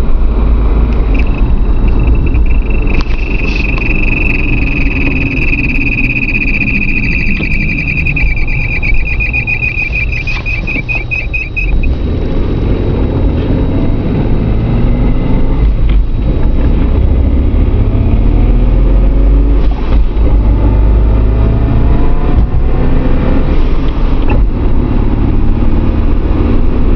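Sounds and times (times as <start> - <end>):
high-pitched driveline whine: 0.0 - 16.0
heavy low rumble: 0.0 - 22.8
car engine: 0.0 - 26.9.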